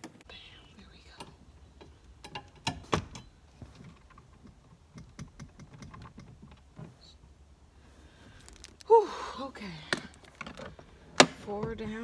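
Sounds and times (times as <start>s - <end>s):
clicks of plastic parts and screws: 9.8s - 12.0s.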